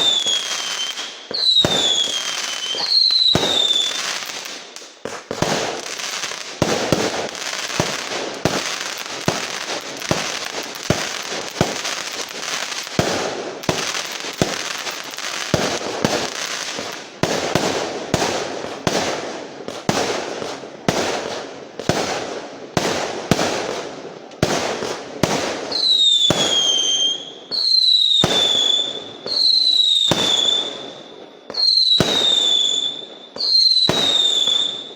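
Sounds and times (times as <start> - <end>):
firecrackers banging: 0.0 - 25.7
whistling fireworks: 0.0 - 34.9.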